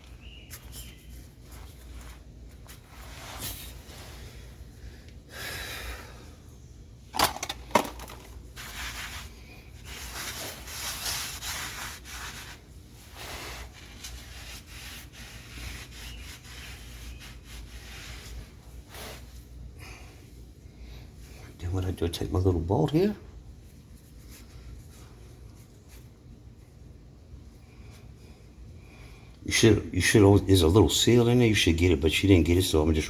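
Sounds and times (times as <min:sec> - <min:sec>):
hands rubbing and scraping car parts: 0:00.0 - 0:05.2, 0:07.4 - 0:19.6.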